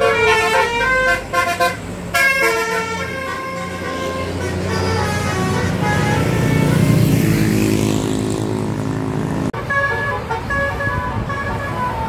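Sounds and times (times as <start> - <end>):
musical bus horn tune: 0.0 - 7.1, 9.5 - 12.0
bus engine running loud: 0.0 - 12.0.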